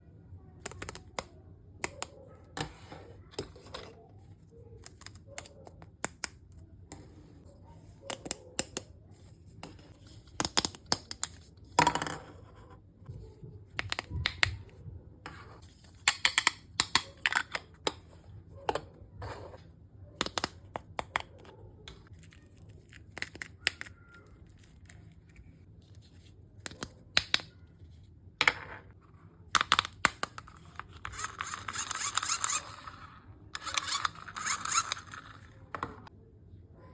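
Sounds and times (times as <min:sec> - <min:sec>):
plastic toy pieces clicking: 0:29.6 - 0:36.0.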